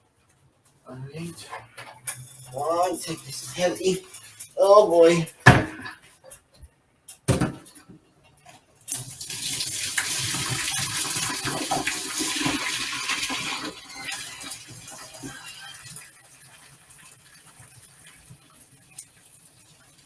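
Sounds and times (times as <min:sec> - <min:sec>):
water pouring into colander: 0:08.9 - 0:20.0.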